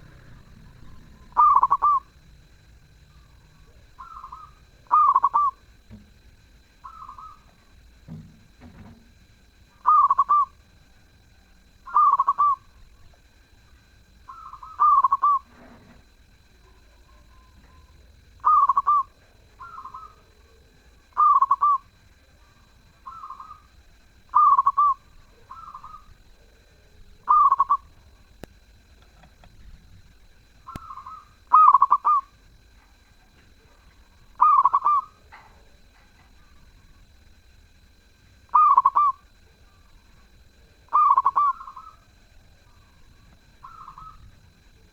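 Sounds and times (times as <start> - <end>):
dove cooing: 0.0 - 28.4, 29.0 - 37.2, 38.5 - 44.9.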